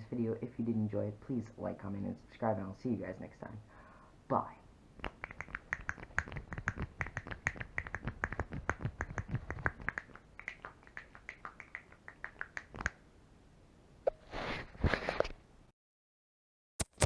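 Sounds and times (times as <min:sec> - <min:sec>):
short rustle: 0:14.2 - 0:15.4.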